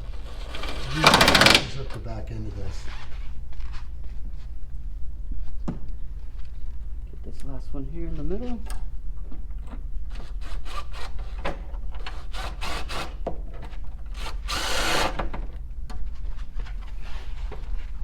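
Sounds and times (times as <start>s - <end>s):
loud rasping noise: 0.2s - 2.0s.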